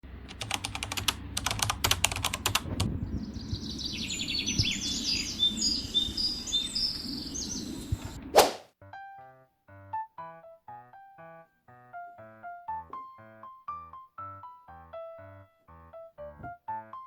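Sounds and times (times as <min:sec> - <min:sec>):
low background rumble: 0:00.0 - 0:08.3
sharp clicks: 0:00.3 - 0:02.9
small bird chirping: 0:02.0 - 0:08.2.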